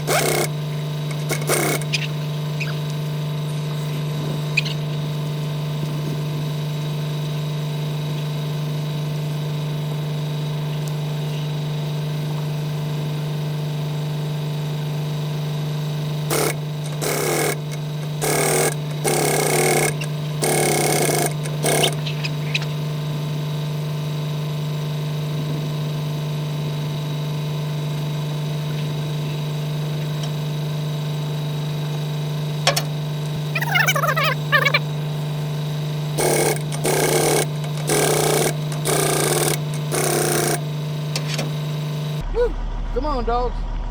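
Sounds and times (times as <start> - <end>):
machine hum: 0.0 - 7.0, 16.1 - 23.2, 33.3 - 35.2
short noisy bursts: 33.6 - 34.8.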